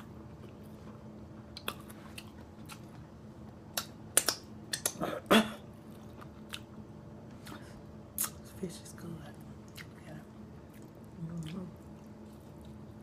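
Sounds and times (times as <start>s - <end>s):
person chewing food: 0.0s - 5.0s, 5.7s - 8.4s, 10.6s - 13.0s.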